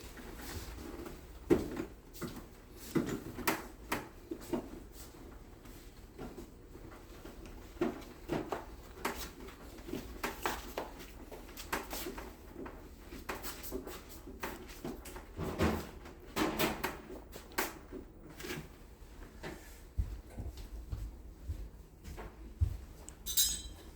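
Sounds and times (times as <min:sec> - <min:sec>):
tools clicking and knocking on metal: 0:23.2 - 0:23.9.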